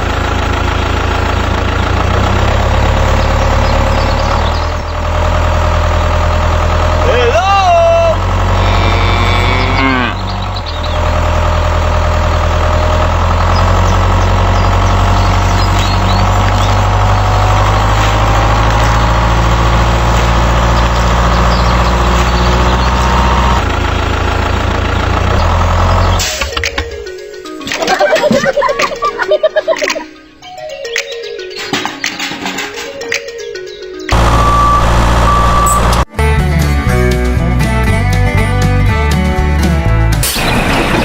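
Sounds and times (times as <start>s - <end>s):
heavy truck engine idling: 0.0s - 27.3s, 34.1s - 36.1s.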